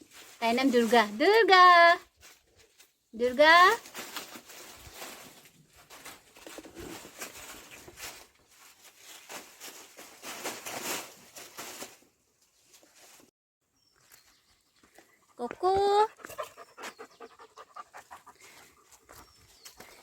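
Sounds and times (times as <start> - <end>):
rustling and scuffling: 0.0 - 13.3.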